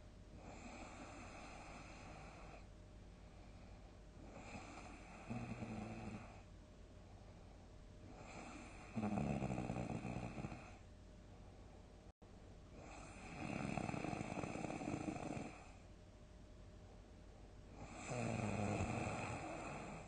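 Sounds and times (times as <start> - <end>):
quiet breathing: 0.0 - 16.0, 16.7 - 20.0
person snoring loudly: 8.2 - 10.7, 12.8 - 15.6, 17.8 - 20.0.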